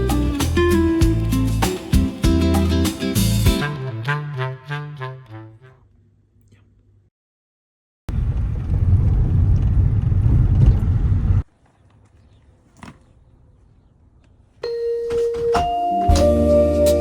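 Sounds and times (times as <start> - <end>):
music with held keyboard notes: 0.0 - 5.5, 14.6 - 17.0
loud low rumbling: 8.1 - 11.4.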